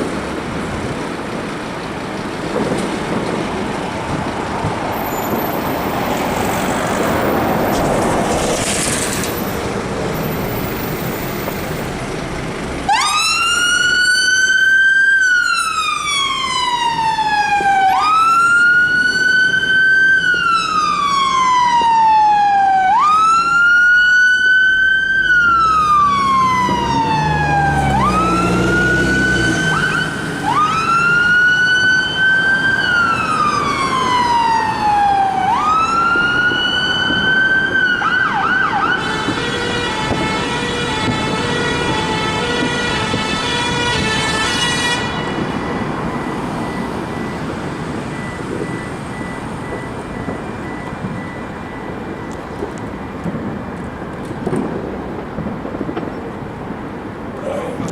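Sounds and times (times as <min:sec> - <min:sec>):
fire engine siren wailing: 0:00.0 - 0:57.9
siren whoops: 0:12.9 - 0:52.8.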